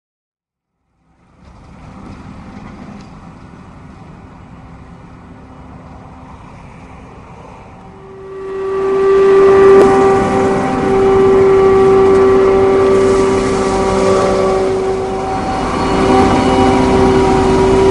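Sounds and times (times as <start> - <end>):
forage harvester engine whine: 1.0 - 17.9.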